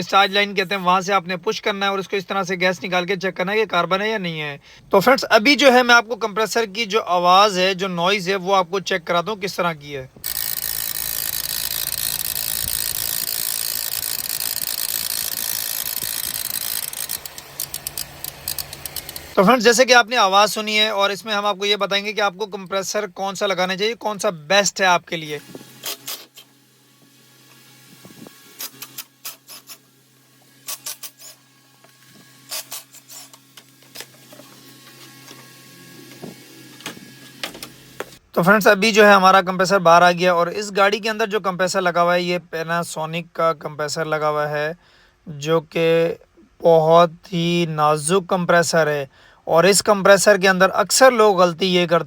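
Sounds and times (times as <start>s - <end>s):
hand tools clicking on metal: 10.2s - 19.4s
ac compressor fluttering noise: 10.2s - 29.5s.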